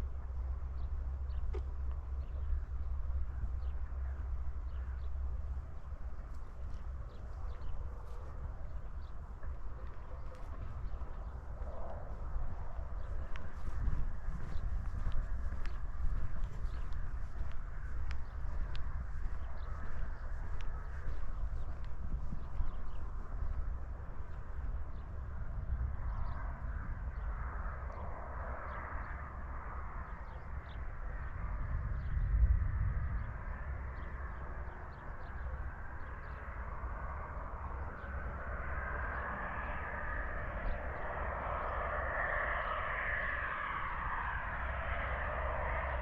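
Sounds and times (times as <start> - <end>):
wind buffeting microphone: 0.0 - 46.0
jet engine rushing: 36.8 - 46.0.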